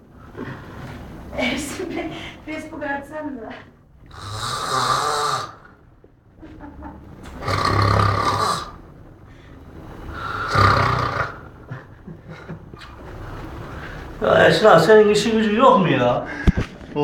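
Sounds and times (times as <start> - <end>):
quiet breathing: 0.0 - 1.3, 2.1 - 2.5, 9.2 - 11.1, 13.2 - 14.2
man snoring: 4.1 - 5.8, 7.4 - 8.8, 10.1 - 11.6.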